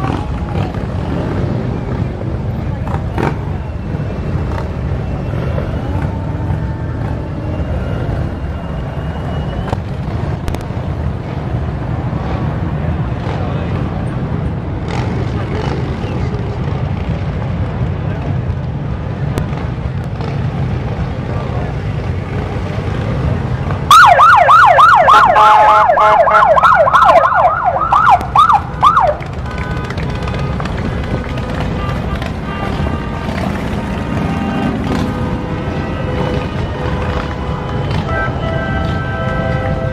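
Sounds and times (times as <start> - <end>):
low rumble of traffic: 0.0 - 39.9
motorcycles riding past: 0.0 - 39.9
electronic siren yelping: 23.9 - 29.2.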